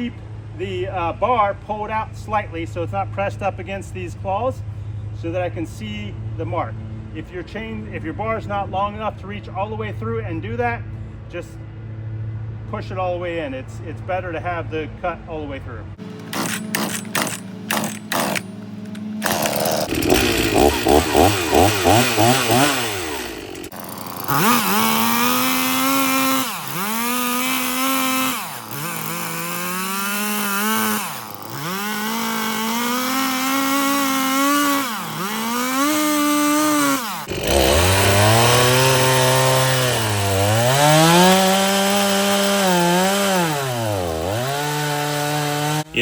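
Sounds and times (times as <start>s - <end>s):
chainsaw cutting log: 16.0s - 46.0s.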